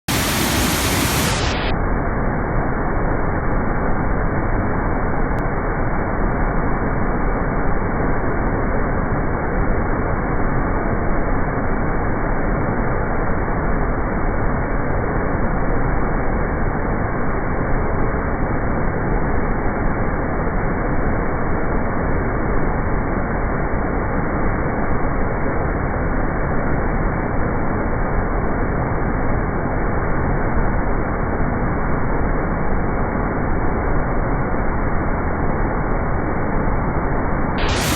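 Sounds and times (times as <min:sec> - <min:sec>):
waterfall rushing rumble: 0:00.0 - 0:01.7, 0:37.6 - 0:37.9.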